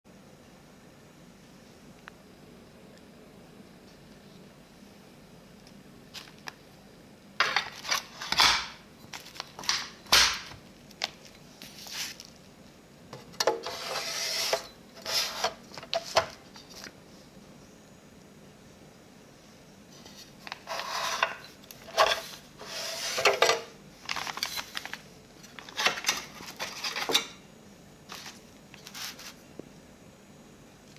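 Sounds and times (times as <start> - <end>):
steady low hum: 0.1 - 30.9
hard drive scraping slide: 13.4 - 16.3, 20.5 - 23.7.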